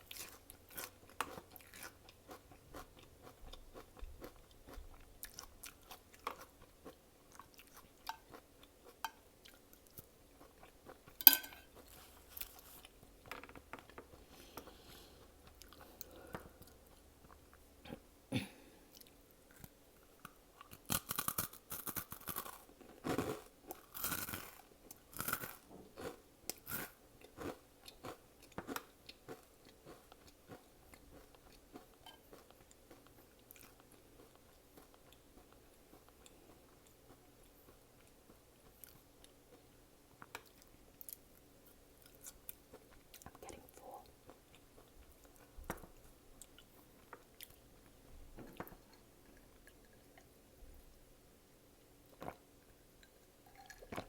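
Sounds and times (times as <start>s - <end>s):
chewing and crunching food: 0.0s - 51.0s, 52.0s - 54.0s.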